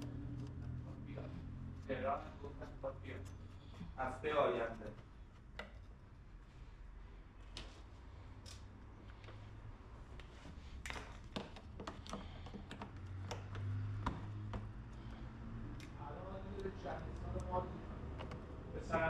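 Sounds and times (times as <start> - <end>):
light metal clicks and taps: 0.0 - 1.9, 10.8 - 18.5.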